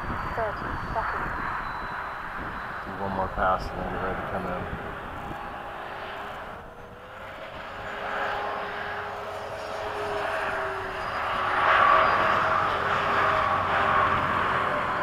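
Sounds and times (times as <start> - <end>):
electric ducted fan whining: 0.0 - 15.0.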